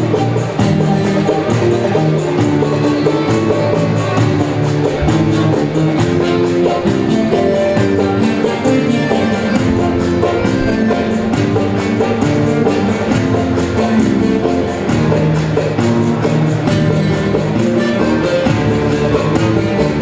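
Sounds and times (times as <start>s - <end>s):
plucked guitar-like strings: 3.2s - 20.0s
steady beat: 4.5s - 7.5s.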